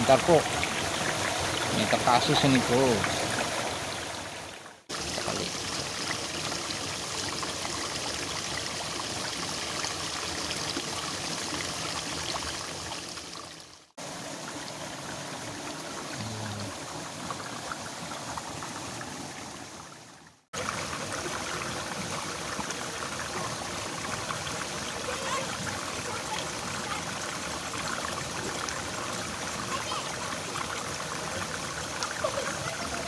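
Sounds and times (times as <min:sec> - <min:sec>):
water rushing along a ditch: 0:00.0 - 0:33.0.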